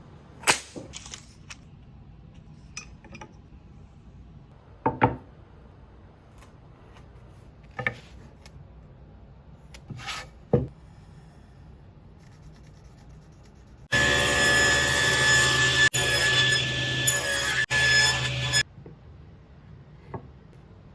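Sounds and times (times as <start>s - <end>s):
power saw cutting wood: 13.9s - 18.6s.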